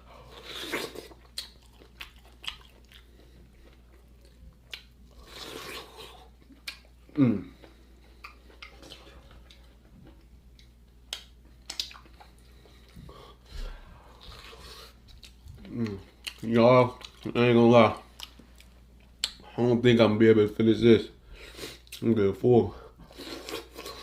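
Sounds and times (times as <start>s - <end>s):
chewing: 0.4s - 6.9s, 7.5s - 13.1s.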